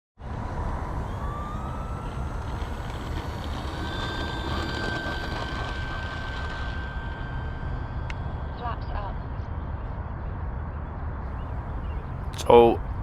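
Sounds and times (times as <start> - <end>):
wind rumble on microphone: 0.2 - 13.0
electric model plane motor whining: 0.3 - 8.6.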